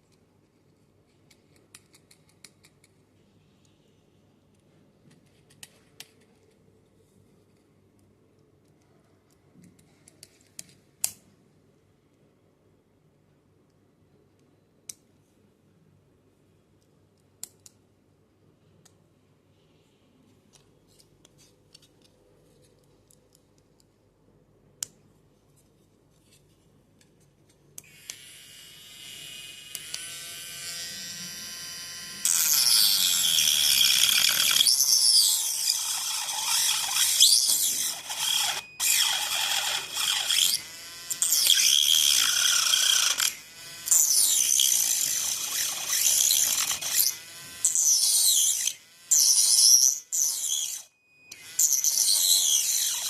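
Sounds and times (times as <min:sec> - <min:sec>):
grinder motor whining: 0:29.2 - 0:53.0
cutting disc grinding plastic: 0:29.7 - 0:53.0.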